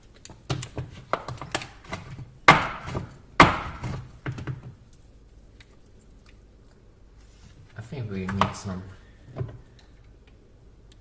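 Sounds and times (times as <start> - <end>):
hard chocolate knocking and cracking: 0.0 - 5.0, 8.2 - 10.4.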